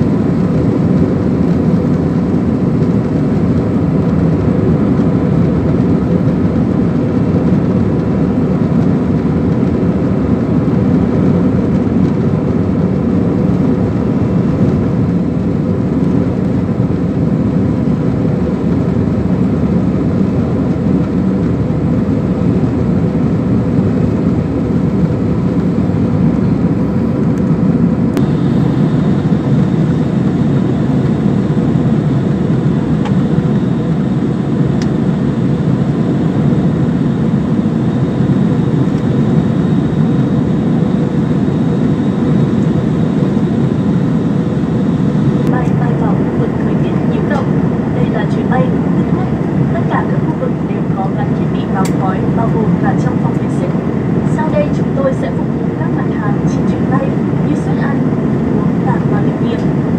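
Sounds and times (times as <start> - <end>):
airliner cabin engine rush: 0.0 - 59.9
faint steady hums: 13.0 - 59.9.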